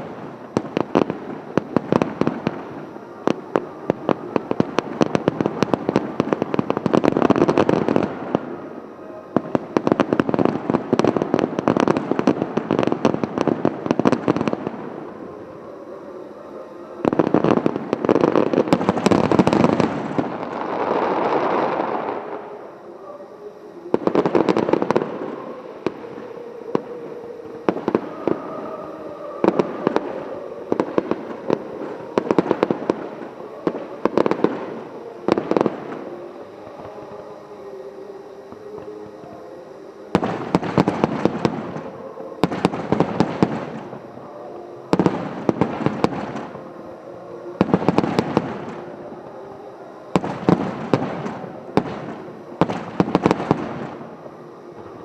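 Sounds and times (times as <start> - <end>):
fireworks bursting with crackling: 0.0 - 37.6, 38.2 - 55.0
scattered firework bangs: 50.1 - 54.1.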